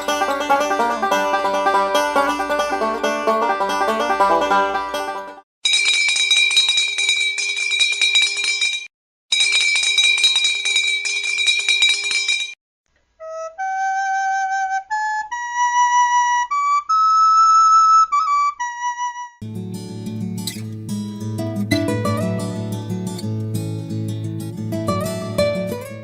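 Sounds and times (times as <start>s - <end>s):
flute melody: 0.0s - 5.4s, 13.2s - 19.4s.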